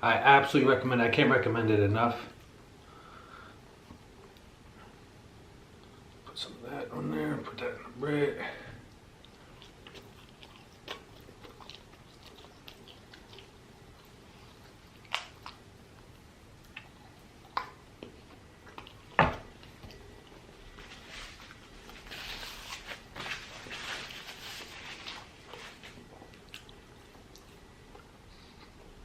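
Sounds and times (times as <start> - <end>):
wet chewing: 8.9 - 29.0.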